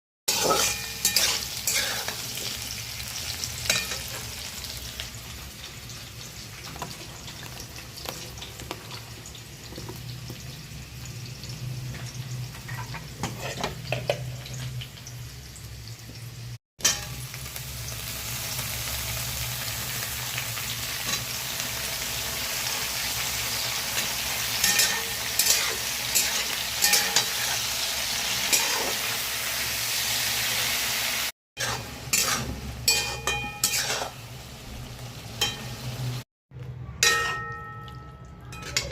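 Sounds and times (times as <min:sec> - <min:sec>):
spatula scraping a pan: 0:00.3 - 0:02.6, 0:12.7 - 0:14.6, 0:24.5 - 0:27.7, 0:28.4 - 0:29.1, 0:31.6 - 0:34.2
vegetables sizzling in oil: 0:00.3 - 0:36.2.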